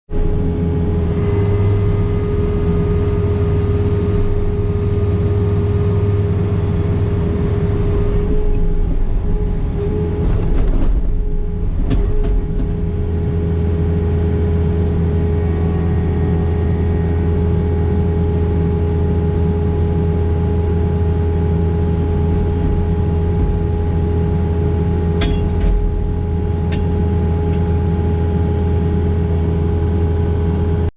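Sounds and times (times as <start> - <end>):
loud engine hum: 0.1 - 30.9
spinning cutter whine: 0.8 - 13.2.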